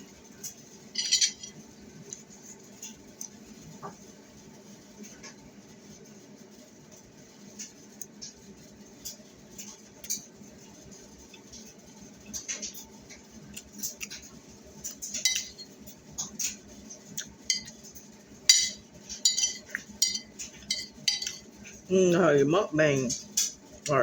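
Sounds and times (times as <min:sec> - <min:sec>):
cutlery clinking against a dish: 0:01.0 - 0:01.6, 0:14.8 - 0:16.6, 0:17.2 - 0:17.9, 0:18.5 - 0:21.5.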